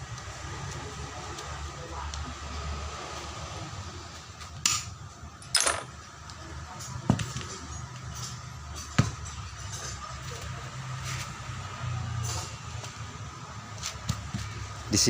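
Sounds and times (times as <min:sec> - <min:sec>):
metal tools clinking on workbench: 0:05.4 - 0:06.0.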